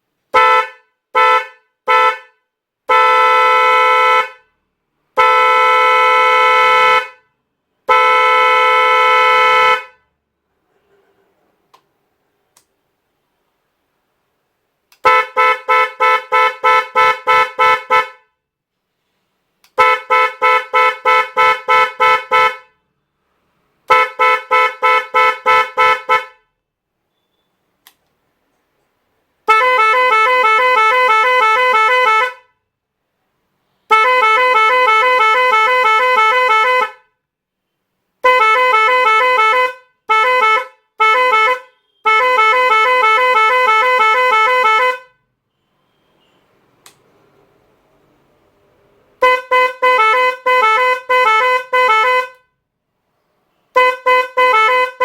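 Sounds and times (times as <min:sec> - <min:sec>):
electric horn blasts: 0:29.4 - 0:32.5, 0:33.9 - 0:37.0, 0:38.2 - 0:45.1, 0:49.2 - 0:52.4, 0:53.7 - 0:55.0.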